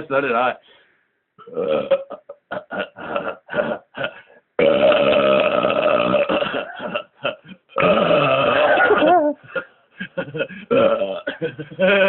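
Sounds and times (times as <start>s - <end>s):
man belching: 1.4s - 3.9s, 4.6s - 9.2s, 10.7s - 11.4s.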